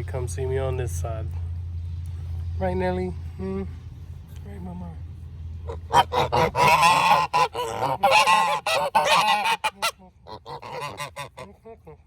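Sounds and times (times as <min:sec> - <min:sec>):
geese honking: 0:05.6 - 0:12.0.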